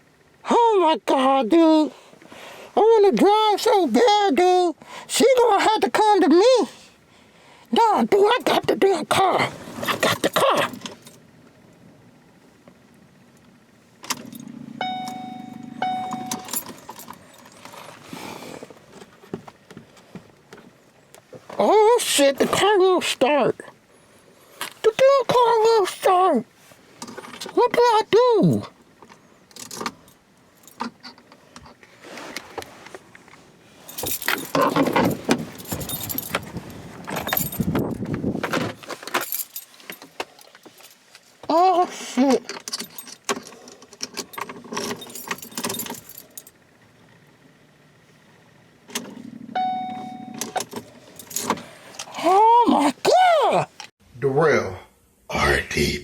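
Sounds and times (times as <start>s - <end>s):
car starter cranking: 14.0s - 19.0s, 33.9s - 39.6s, 48.8s - 52.2s
dashboard chime dinging: 14.7s - 16.8s, 49.6s - 50.7s.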